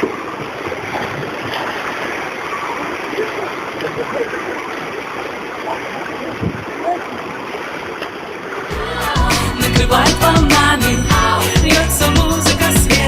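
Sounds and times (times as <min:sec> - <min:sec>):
sea surf washing on shore: 0:00.0 - 0:08.7.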